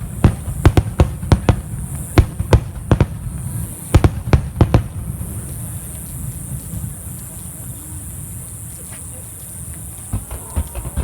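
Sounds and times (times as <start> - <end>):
fireworks bursting: 0.0 - 8.5, 9.5 - 11.0.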